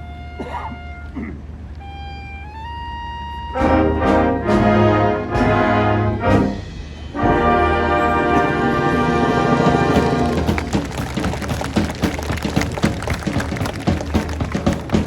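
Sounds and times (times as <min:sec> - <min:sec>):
marching band playing: 0:00.0 - 0:15.0
drum hits: 0:03.6 - 0:15.0.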